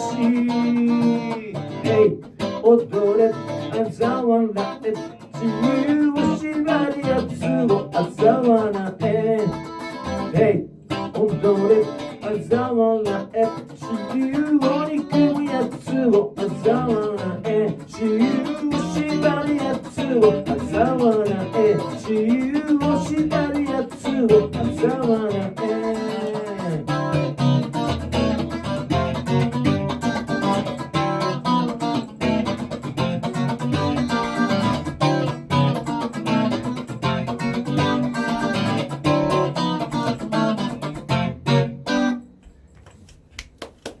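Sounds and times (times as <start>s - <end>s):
rock band playing: 16.7s - 42.2s.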